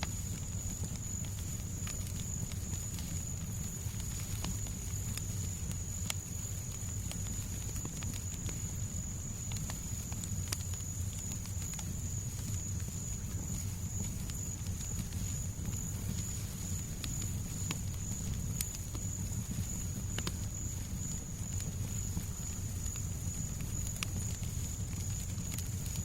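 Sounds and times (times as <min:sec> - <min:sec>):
fire crackling and popping: 0:00.0 - 0:26.0.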